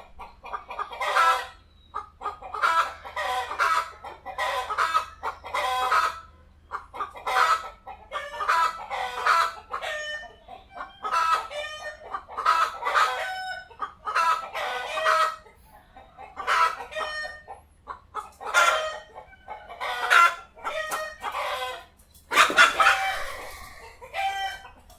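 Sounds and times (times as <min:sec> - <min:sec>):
chickens clucking: 0:00.0 - 0:24.9
chicken squawking: 0:16.3 - 0:24.9.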